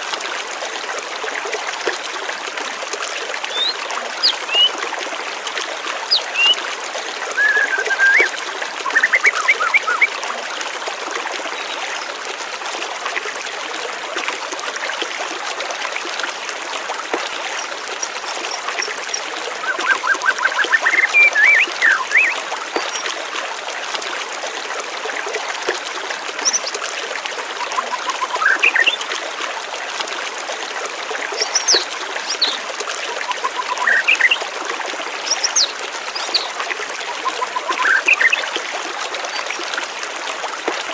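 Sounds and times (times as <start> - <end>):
water trickling: 0.0 - 40.9
birds chirping: 3.5 - 4.7, 6.1 - 6.6, 7.4 - 10.1, 18.3 - 23.1, 33.3 - 34.4, 35.3 - 38.4.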